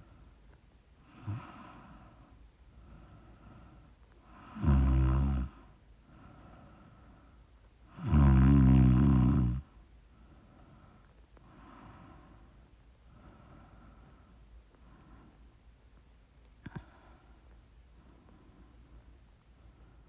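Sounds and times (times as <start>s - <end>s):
woman snoring: 1.1s - 1.7s, 4.3s - 5.6s, 8.0s - 9.6s
soft breathing: 1.3s - 4.4s, 5.6s - 7.6s, 10.1s - 20.0s.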